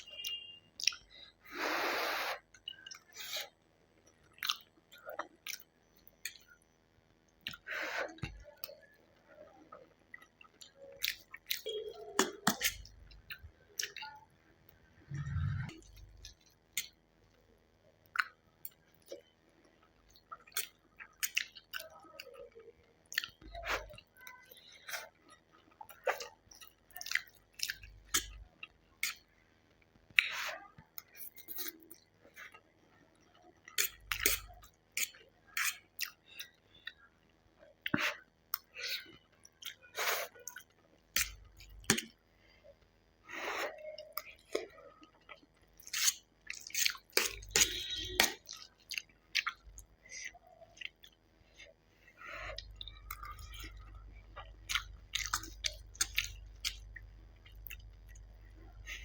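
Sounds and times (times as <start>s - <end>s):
wet chewing mouth sounds: 0.0s - 6.5s, 7.4s - 14.2s, 18.0s - 29.4s, 33.2s - 42.2s, 43.6s - 59.0s.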